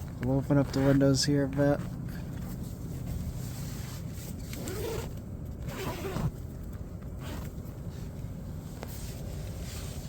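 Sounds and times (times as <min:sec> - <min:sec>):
zipper being pulled open: 0:00.6 - 0:01.0, 0:03.8 - 0:06.3, 0:07.2 - 0:07.5.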